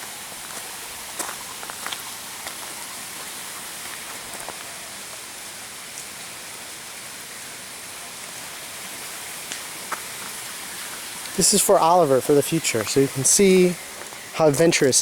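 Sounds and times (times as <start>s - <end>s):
rain hissing on foliage: 0.0s - 15.0s
faint drip ticks: 10.8s - 11.4s.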